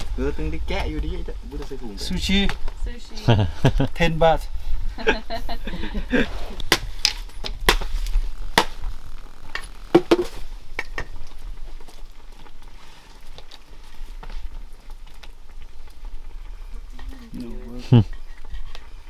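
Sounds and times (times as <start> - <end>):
low rumble: 0.0 - 4.0.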